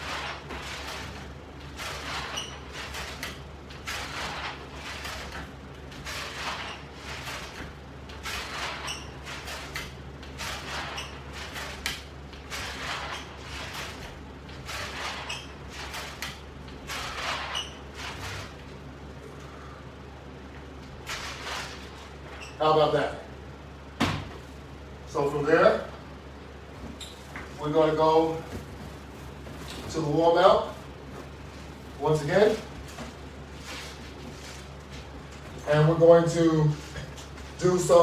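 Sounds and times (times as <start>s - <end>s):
ab roller wheel rolling on floor: 0.0s - 18.8s
steady low hum: 0.0s - 38.0s.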